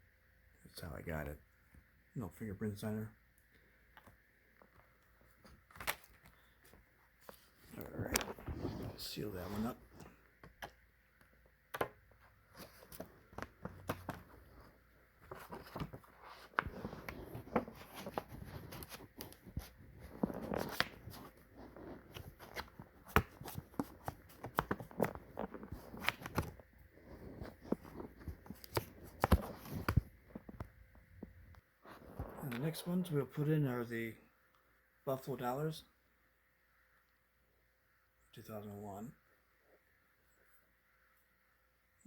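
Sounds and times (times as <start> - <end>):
rustling: 12.1 - 32.6.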